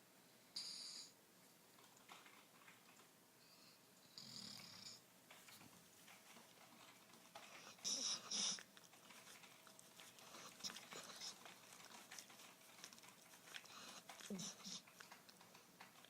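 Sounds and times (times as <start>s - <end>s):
faint snoring: 3.5s - 5.0s.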